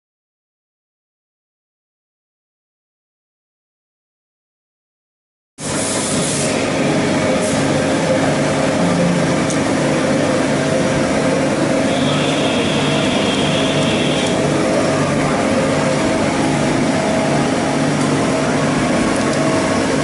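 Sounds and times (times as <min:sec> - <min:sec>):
high steady whine: 0:05.6 - 0:20.0
lathe mechanical hum: 0:05.6 - 0:20.0.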